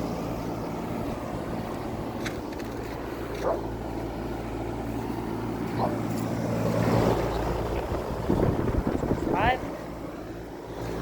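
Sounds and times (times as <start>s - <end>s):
compressor hum: 0.0s - 11.0s
condenser fan rushing: 0.0s - 11.0s.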